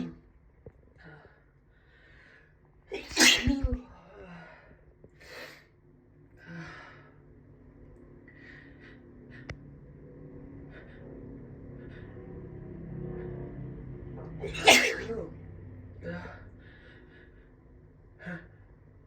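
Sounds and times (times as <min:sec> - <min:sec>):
woman sneezing: 0:02.9 - 0:03.8, 0:14.4 - 0:15.1.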